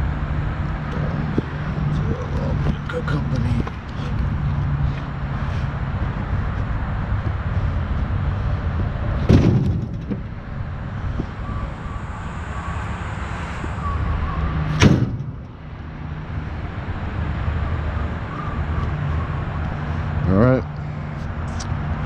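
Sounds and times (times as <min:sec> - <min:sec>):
vehicle engine idling: 0:00.0 - 0:22.0
heavy thumps: 0:08.8 - 0:11.5, 0:14.7 - 0:15.6.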